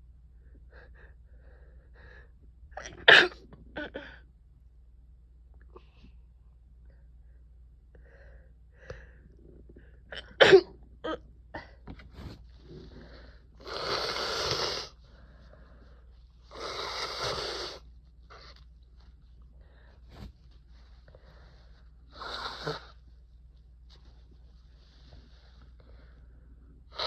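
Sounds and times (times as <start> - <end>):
person sneezing: 2.8 - 4.1
person sniffing: 13.6 - 15.0, 16.5 - 17.9.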